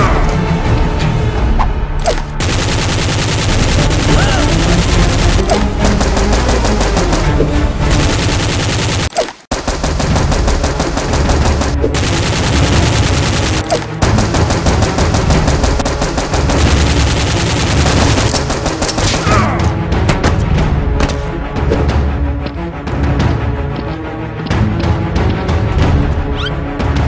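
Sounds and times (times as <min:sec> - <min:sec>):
automatic gunfire bursts: 0:02.4 - 0:07.3, 0:07.9 - 0:19.2.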